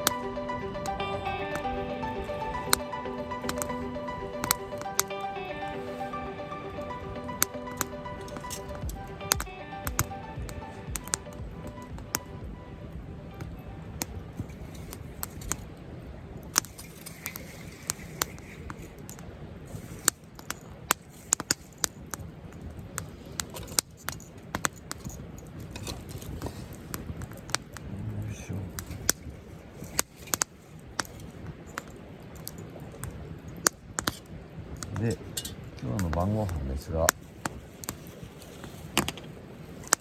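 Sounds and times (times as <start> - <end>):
background music of held notes: 0.0 - 14.8
campfire pops: 0.0 - 40.0
shallow river murmuring: 0.0 - 40.0.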